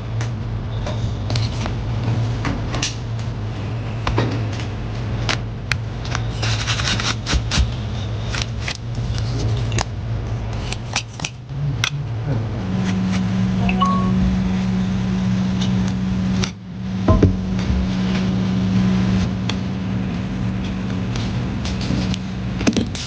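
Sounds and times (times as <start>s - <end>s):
steady low hum: 13.5s - 20.4s.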